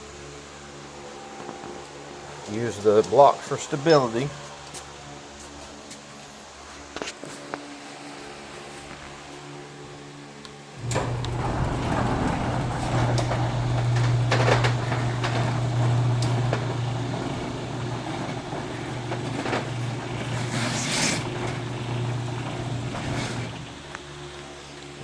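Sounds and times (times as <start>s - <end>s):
roll-up doors clanking and rattling: 10.8s - 24.3s
garage door opener motor humming: 10.8s - 25.0s.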